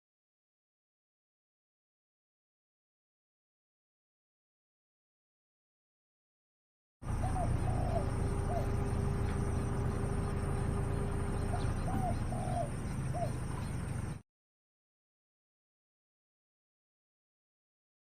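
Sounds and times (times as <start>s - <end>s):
bird calling in arching notes: 7.1s - 14.2s
steady low rumble: 7.1s - 14.2s.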